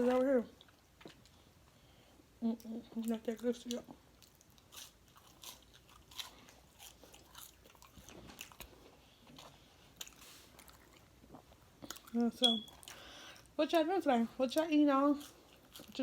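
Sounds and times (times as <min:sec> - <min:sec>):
person chewing and crunching: 0:02.5 - 0:13.5, 0:15.0 - 0:16.0.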